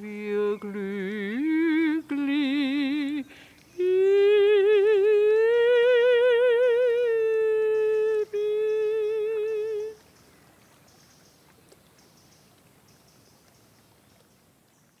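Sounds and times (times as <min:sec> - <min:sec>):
woman singing high note: 0:00.0 - 0:10.0
faint room hiss: 0:00.0 - 0:15.0.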